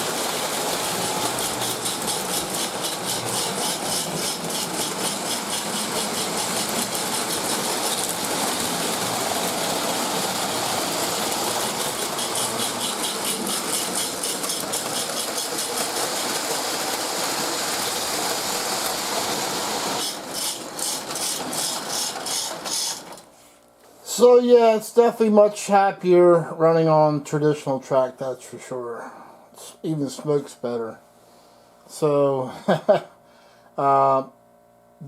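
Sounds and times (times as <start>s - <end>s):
toy steam locomotive chuffing: 0.0s - 23.3s
wheels on track: 0.0s - 23.3s
motor whir: 0.4s - 23.2s.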